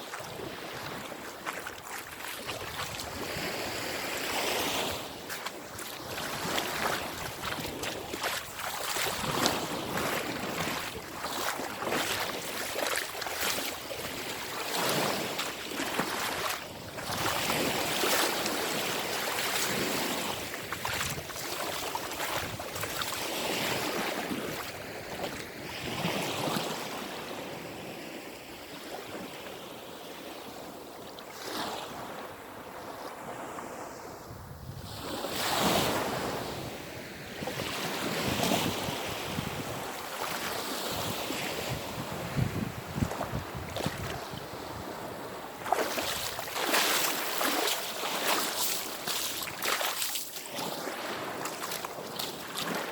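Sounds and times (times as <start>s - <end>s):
waves washing onto shore: 0.0s - 52.9s
wind buffeting microphone: 19.6s - 25.2s, 41.0s - 45.3s.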